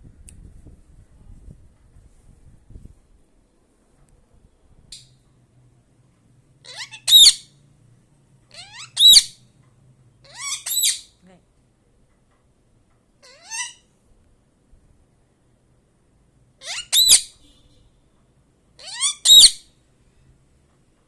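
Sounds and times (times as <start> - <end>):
parrot squawking: 6.6 - 7.5, 8.5 - 9.4, 10.2 - 11.1, 13.2 - 13.8, 16.6 - 17.4, 18.8 - 19.7.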